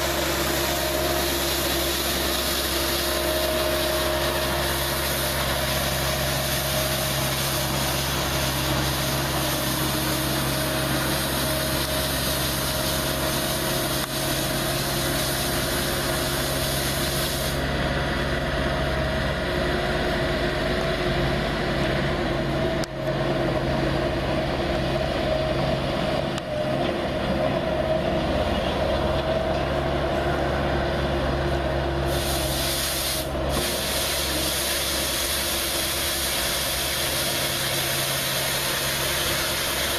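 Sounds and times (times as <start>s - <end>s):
hydraulic broom sweeping: 0.0s - 17.7s, 32.0s - 39.9s
skid steer engine running: 0.0s - 39.9s
high hiss: 4.1s - 17.7s, 32.1s - 39.9s.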